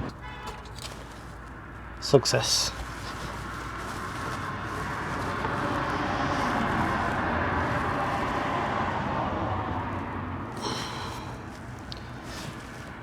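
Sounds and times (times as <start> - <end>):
vehicle passing by: 2.4 - 13.0.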